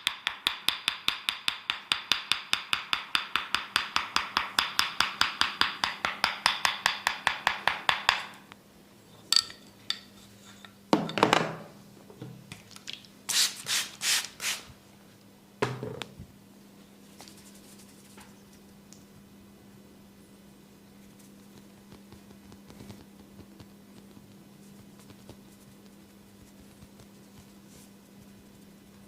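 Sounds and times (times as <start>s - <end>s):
wooden mallet tapping wedge: 0.0s - 8.4s.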